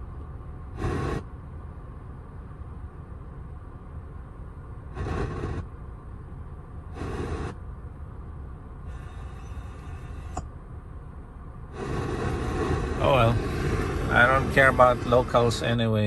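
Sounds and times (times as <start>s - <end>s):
low steady rumble: 0.0s - 16.0s
radio static bursts: 0.8s - 1.2s, 5.0s - 5.7s, 7.0s - 7.6s, 11.8s - 16.0s
faint hiss: 6.9s - 7.6s, 8.8s - 10.4s, 11.7s - 16.0s.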